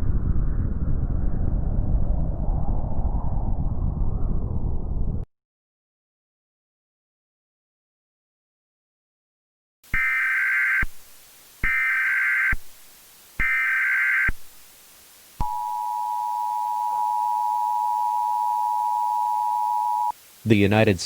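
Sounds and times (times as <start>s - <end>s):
two-tone attention signal: 15.4s - 20.1s.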